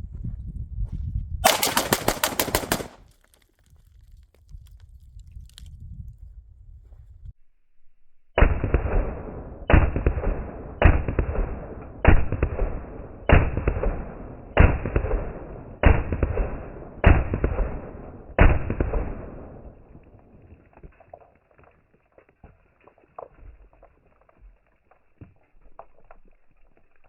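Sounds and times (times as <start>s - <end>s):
rifle shots echoing: 1.4s - 3.0s, 8.4s - 20.2s.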